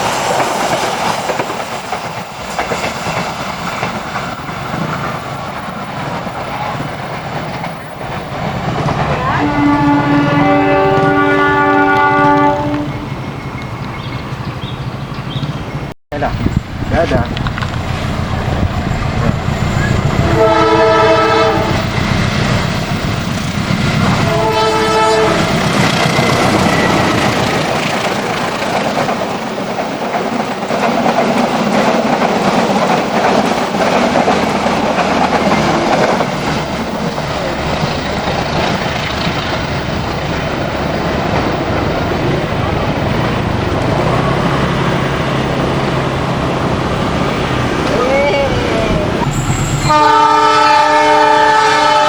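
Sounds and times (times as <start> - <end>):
train wheels clattering on rails: 0.0 - 15.6, 16.8 - 48.2
train horn blasts: 9.2 - 13.0, 19.8 - 22.0, 24.1 - 25.8, 49.2 - 52.0.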